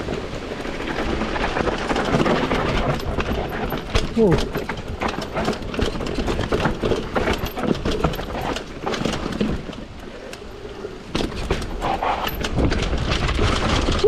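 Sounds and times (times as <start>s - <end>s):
bike tyres over dirt and rocks: 0.0s - 14.0s
bike frame knocks: 11.1s - 14.0s
wind rumble on microphone: 11.1s - 14.0s.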